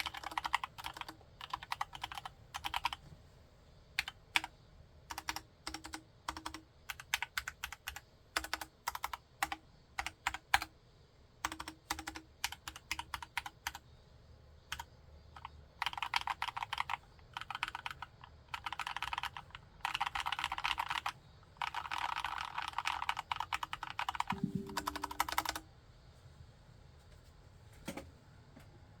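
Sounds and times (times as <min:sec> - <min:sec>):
mechanical keyboard typing: 0:00.0 - 0:03.0, 0:04.0 - 0:04.5, 0:05.1 - 0:10.7, 0:11.4 - 0:13.8, 0:14.7 - 0:25.6.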